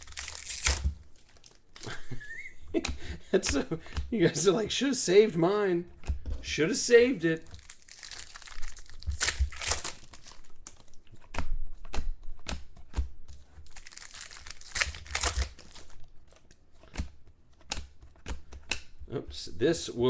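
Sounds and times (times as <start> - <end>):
card pack wrappers crinkling: 0.0 - 2.2, 6.7 - 11.4, 13.6 - 16.6
cards clicking and snapping: 0.0 - 4.2, 7.4 - 19.0.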